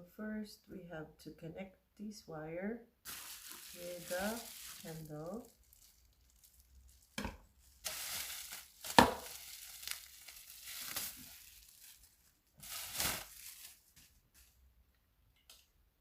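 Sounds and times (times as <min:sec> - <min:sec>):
plastic packaging crinkling: 0:03.1 - 0:14.5.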